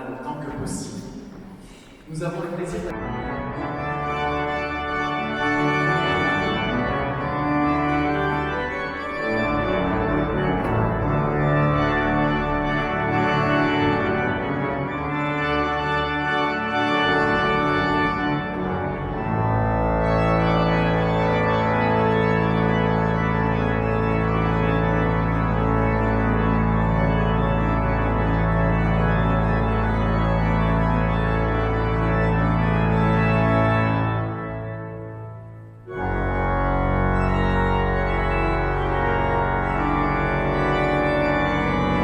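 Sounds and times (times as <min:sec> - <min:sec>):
pipe organ chords: 0:00.0 - 0:42.0.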